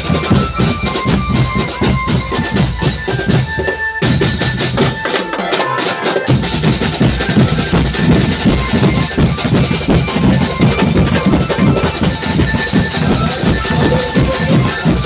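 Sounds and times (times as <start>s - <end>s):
marching drum band: 0.0s - 15.0s
snare and bass drum beats: 0.0s - 15.0s.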